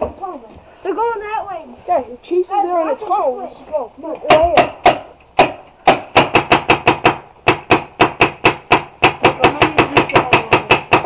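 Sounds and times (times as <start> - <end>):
paintball marker firing rapidly: 4.3 - 11.0.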